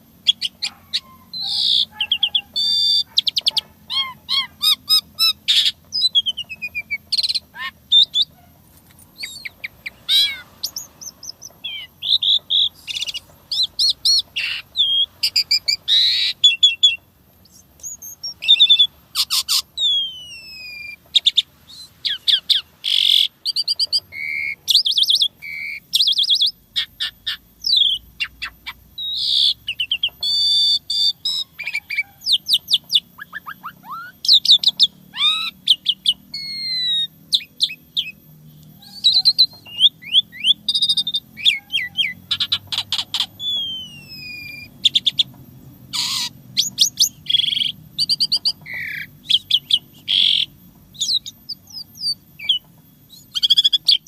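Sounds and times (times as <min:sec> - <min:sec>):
starling singing: 0:00.0 - 0:54.0.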